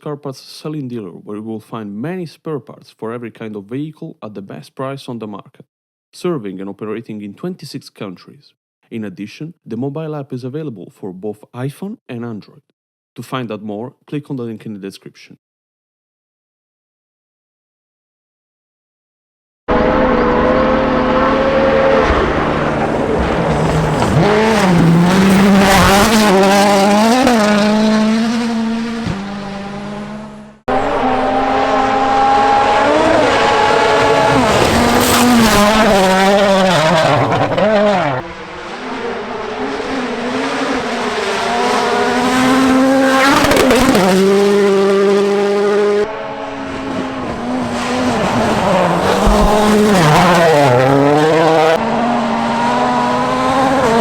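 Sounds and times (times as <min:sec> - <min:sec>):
rally car engines at full throttle: 0:19.7 - 0:54.0.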